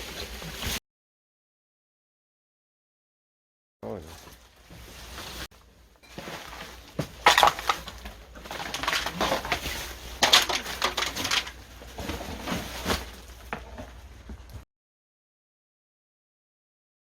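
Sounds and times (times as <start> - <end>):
trash crunching and clattering: 4.2 - 14.6.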